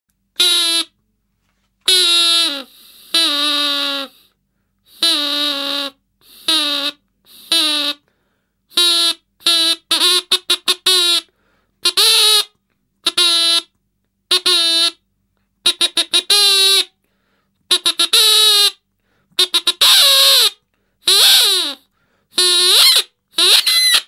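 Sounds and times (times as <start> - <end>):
toy siren buzzy blasts: 19.6 - 21.8, 22.4 - 24.0.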